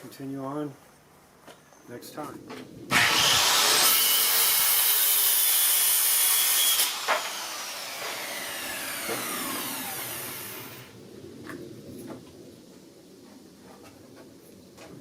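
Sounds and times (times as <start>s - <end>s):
power saw cutting wood: 2.9s - 10.9s
saw blade spinning down: 2.9s - 10.9s.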